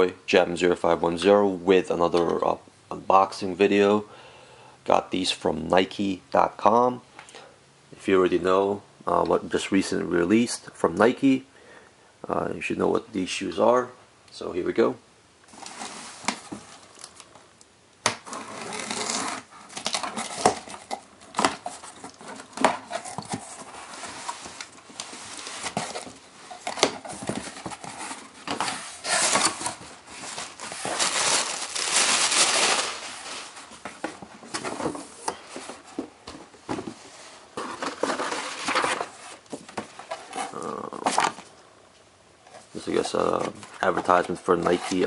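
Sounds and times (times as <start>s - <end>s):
paper rustling and crinkling: 18.2s - 36.1s, 37.6s - 41.5s, 42.5s - 45.0s.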